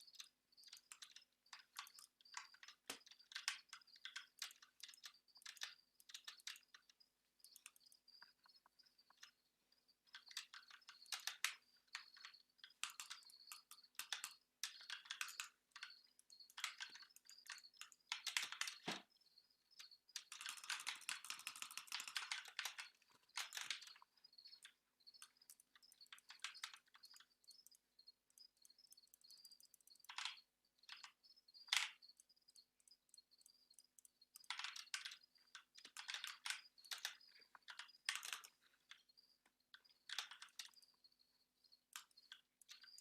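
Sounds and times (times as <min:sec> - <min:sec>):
keyboard typing clicks: 0:00.0 - 0:43.0.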